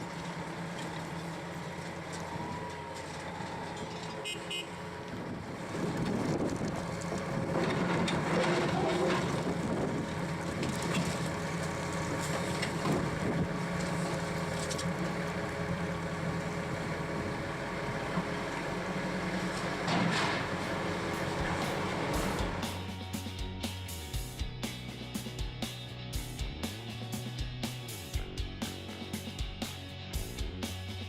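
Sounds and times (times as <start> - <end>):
diesel demolition machinery running: 0.0 - 31.0
debris crunching and knocking: 5.8 - 13.2, 19.4 - 21.9.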